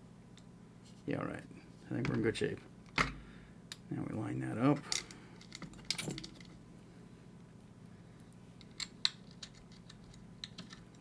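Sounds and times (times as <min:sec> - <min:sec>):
metal lock parts clicking: 0:04.8 - 0:06.6, 0:08.6 - 0:11.0.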